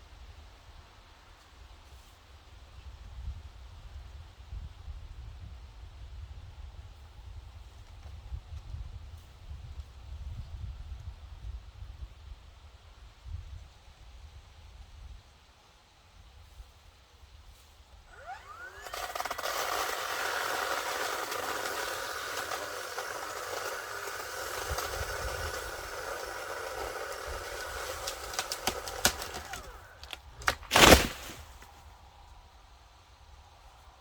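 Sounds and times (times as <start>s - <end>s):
electric chainsaw whining: 18.1s - 31.6s
sharp cracks: 18.1s - 31.7s.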